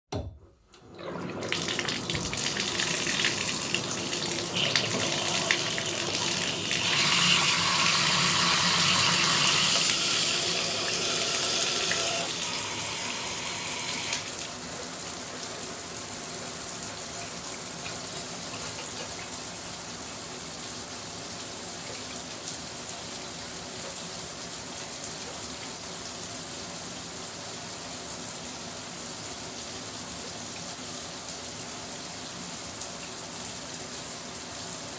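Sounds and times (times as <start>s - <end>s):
shower water spraying: 1.6s - 14.6s.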